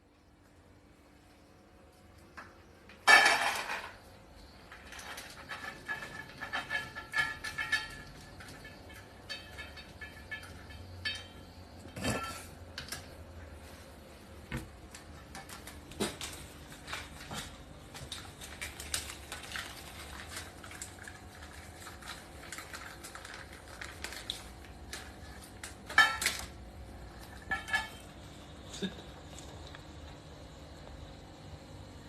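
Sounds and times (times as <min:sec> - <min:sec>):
small hard objects clattering: 0:03.0 - 0:13.2, 0:14.7 - 0:30.0.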